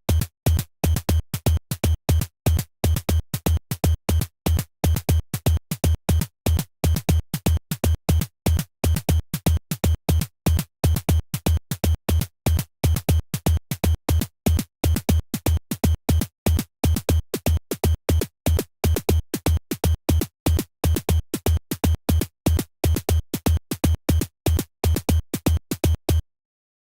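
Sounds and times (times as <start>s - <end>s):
synthesized kick drum: 10.9s - 26.2s
synthesized snare drum: 14.1s - 26.2s.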